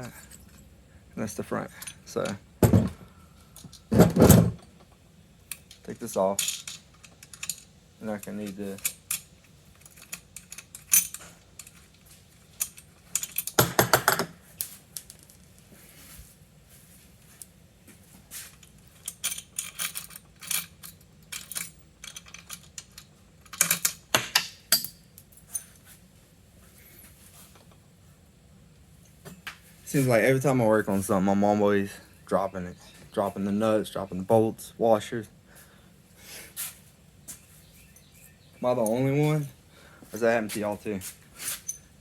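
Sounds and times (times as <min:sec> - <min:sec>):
dropped bolt clattering: 0:05.5 - 0:11.8, 0:12.6 - 0:14.4
metal hardware clinking: 0:05.5 - 0:11.8, 0:12.6 - 0:14.3, 0:18.5 - 0:25.9.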